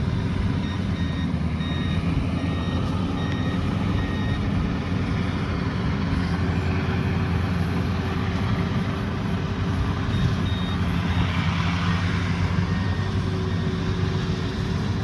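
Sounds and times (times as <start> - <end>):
harvester engine running: 0.0 - 11.4.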